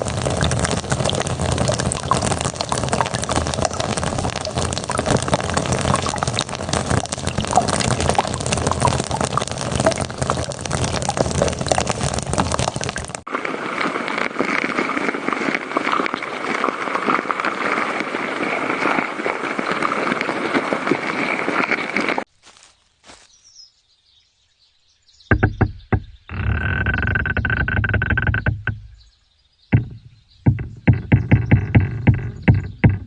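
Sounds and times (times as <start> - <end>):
dense crackling hiss: 0.0 - 23.3
fine crackling: 0.0 - 23.3.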